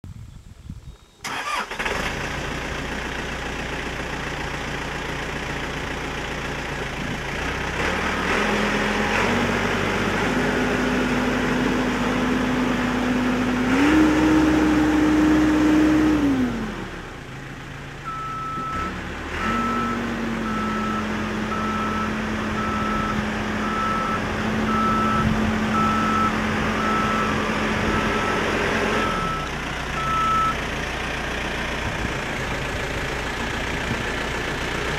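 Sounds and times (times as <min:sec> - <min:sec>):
diesel engine running: 0:01.2 - 0:34.9
reverse alarm beeping: 0:19.6 - 0:28.4, 0:29.0 - 0:30.6.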